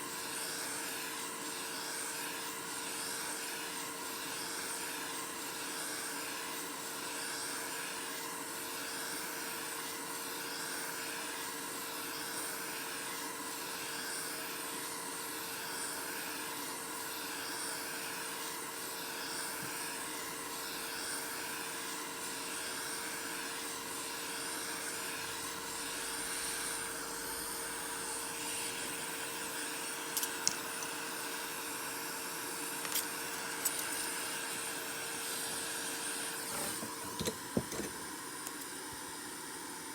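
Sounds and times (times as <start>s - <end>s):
electric motor whirring: 0.1s - 39.0s.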